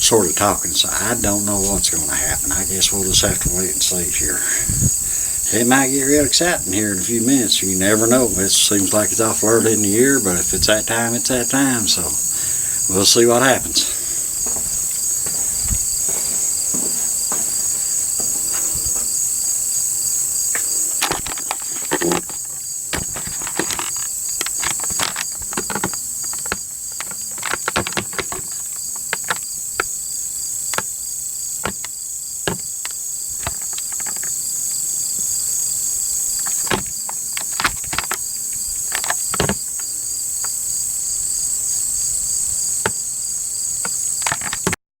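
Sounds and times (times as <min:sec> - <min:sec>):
crickets and night insects trilling: 0:00.0 - 0:44.8
sharp clicks and knocks: 0:20.5 - 0:30.0, 0:31.6 - 0:34.4, 0:36.4 - 0:39.9, 0:43.8 - 0:44.8.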